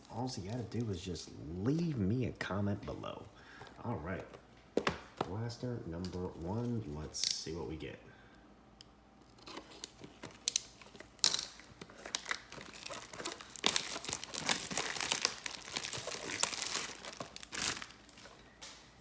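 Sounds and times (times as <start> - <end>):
plastic wrapping tearing and crinkling: 9.2 - 18.8.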